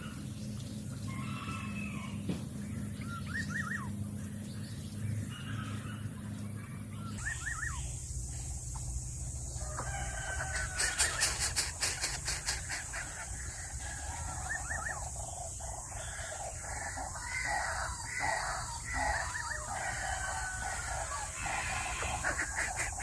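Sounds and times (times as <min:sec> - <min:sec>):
steady high hiss: 0:07.2 - 0:23.0
rough animal calls: 0:09.5 - 0:23.0
quick clicks: 0:10.8 - 0:12.8.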